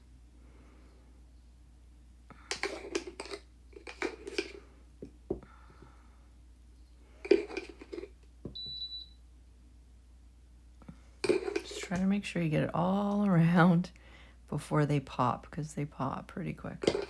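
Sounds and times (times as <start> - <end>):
small tools tapping and clinking: 2.5 - 4.6.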